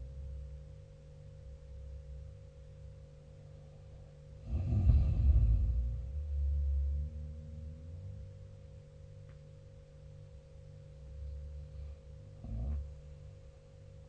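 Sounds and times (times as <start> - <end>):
faint steady hum: 0.0 - 14.0
person snoring: 4.4 - 8.0.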